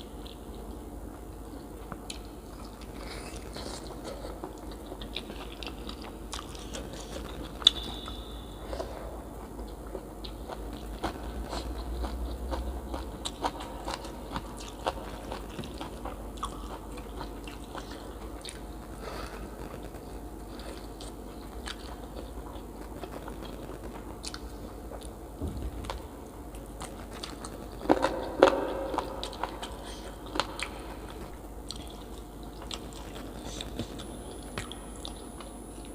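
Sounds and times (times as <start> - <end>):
person chewing crunchy food: 0.0 - 35.9
low hum: 22.9 - 35.9.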